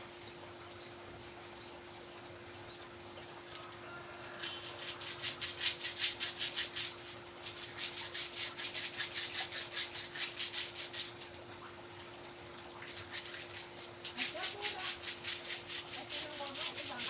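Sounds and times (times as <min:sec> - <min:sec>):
massage rubbing strokes: 0:04.4 - 0:11.1.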